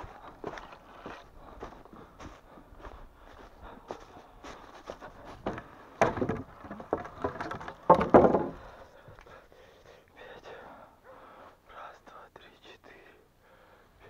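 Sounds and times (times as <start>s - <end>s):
knocks and clattering: 5.4s - 8.7s.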